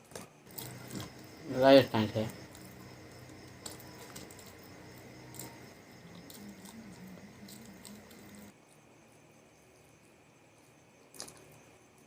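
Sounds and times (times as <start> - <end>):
chewing clicks and smacks: 0.1 - 1.3, 2.4 - 8.5, 11.1 - 11.6.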